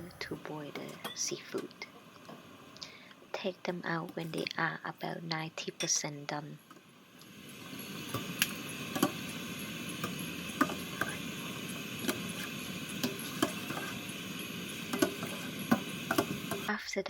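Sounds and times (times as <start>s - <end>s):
steady hiss: 0.0s - 16.7s
utensils knocking against a pot: 12.0s - 14.0s, 14.8s - 16.7s.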